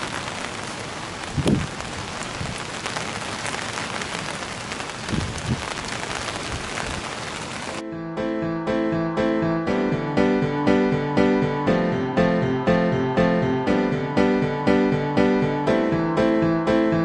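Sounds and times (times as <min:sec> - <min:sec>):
heavy rain falling: 0:00.0 - 0:07.8.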